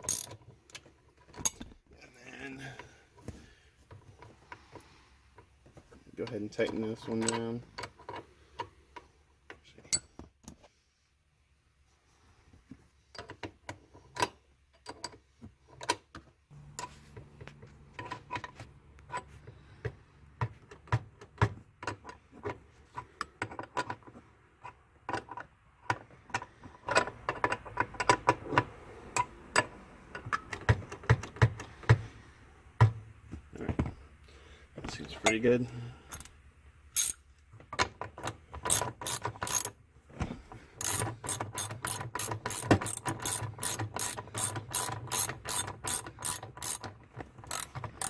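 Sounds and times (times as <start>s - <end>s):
ratchet wrench clicking: 36.1s - 36.3s, 37.0s - 37.2s, 38.6s - 39.7s, 40.8s - 48.0s.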